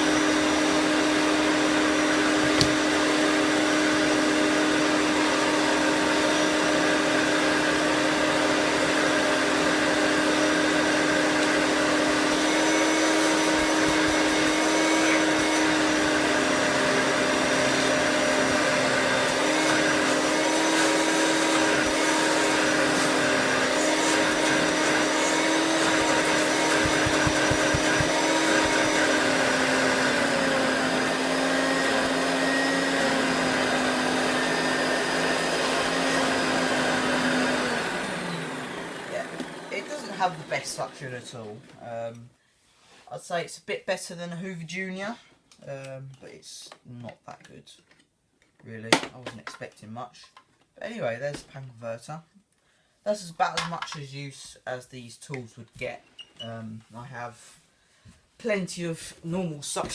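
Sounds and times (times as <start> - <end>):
vacuum cleaner running: 0.0 - 41.8.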